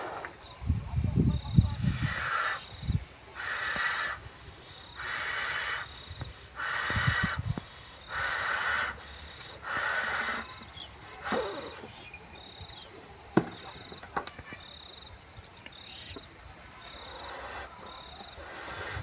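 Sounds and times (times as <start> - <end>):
balloon being inflated: 11.2 - 11.9.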